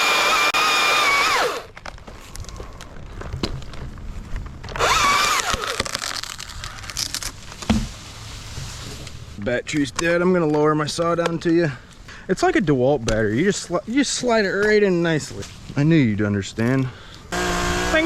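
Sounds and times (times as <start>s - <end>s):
chainsaw high whine: 0.0s - 1.7s, 4.8s - 5.8s, 17.3s - 18.0s.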